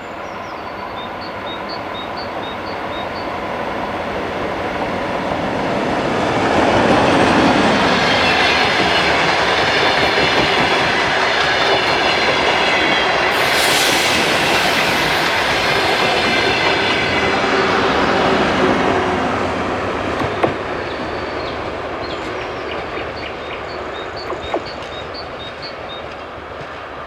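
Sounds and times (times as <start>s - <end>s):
diesel train running: 0.2s - 27.0s
burst of hiss: 13.3s - 17.2s.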